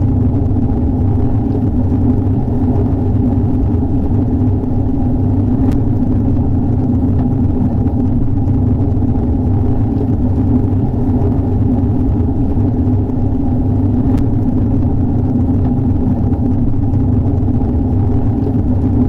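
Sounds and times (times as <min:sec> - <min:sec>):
heavy rain with low rumble: 0:00.0 - 0:19.0
faint tick: 0:05.6 - 0:05.9, 0:14.0 - 0:14.4.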